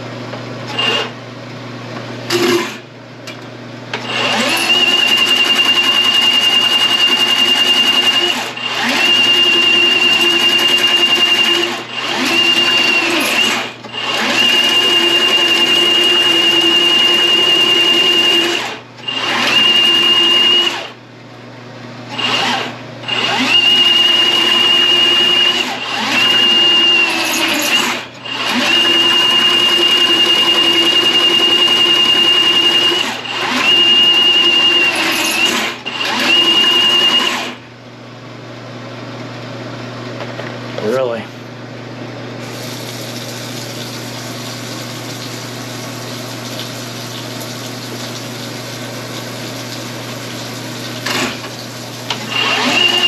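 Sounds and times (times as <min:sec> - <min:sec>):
drain snake motor whining: 0:42.4 - 0:53.0.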